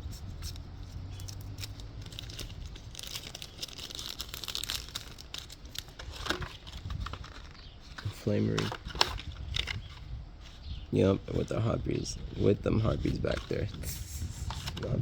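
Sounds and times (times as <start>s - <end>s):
card packaging crinkling: 0.4s - 10.6s, 11.2s - 15.0s.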